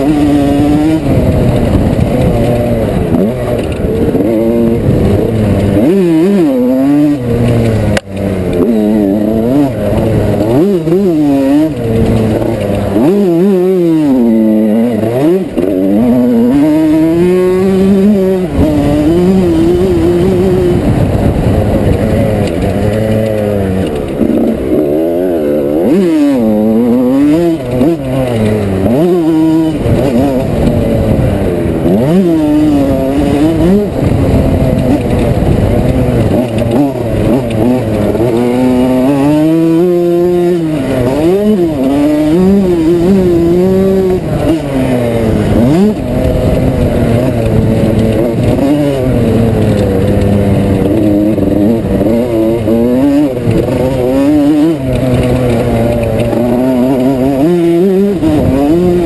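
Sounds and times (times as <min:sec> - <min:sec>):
two-stroke motorcycle engine revving: 0:00.0 - 0:59.0.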